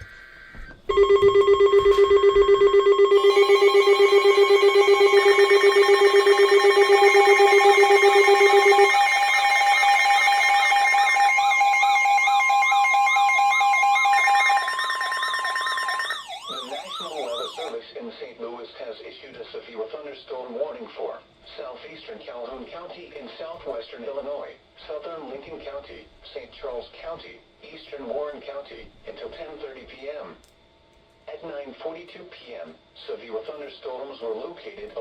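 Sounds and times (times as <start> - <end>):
steady high electronic tones: 0.0 - 17.7
rapidly pulsing alert tone: 0.9 - 17.7
warbling siren-like tones: 0.9 - 17.7.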